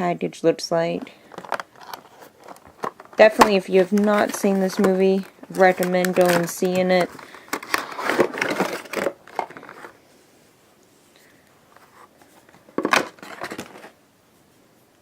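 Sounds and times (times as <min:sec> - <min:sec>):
cardboard box and plastic rustling: 0:00.9 - 0:10.0, 0:11.7 - 0:14.0.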